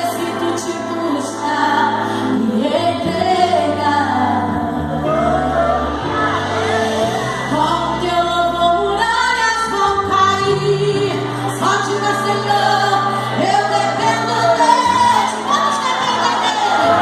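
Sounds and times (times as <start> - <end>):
held bass notes: 2.8 - 15.5
voices singing together: 10.5 - 17.0.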